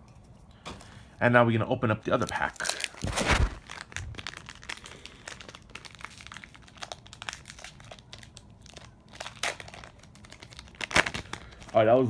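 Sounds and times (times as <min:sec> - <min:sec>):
foil wrapper crinkling: 0:02.1 - 0:12.0.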